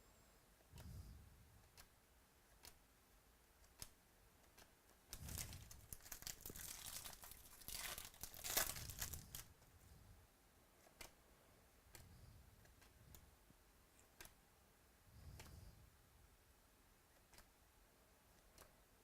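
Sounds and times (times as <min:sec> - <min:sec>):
faint clicks: 0:03.6 - 0:05.5
foil pack tearing and crinkling: 0:05.2 - 0:09.5.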